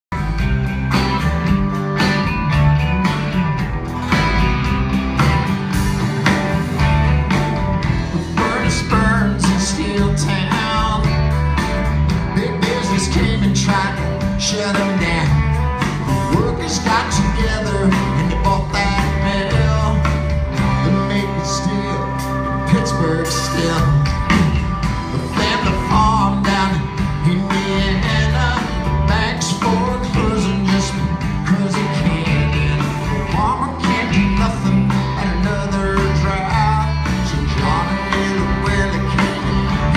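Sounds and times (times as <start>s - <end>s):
country band playing live: 0.1s - 39.9s
person singing: 8.1s - 11.4s, 12.2s - 39.9s.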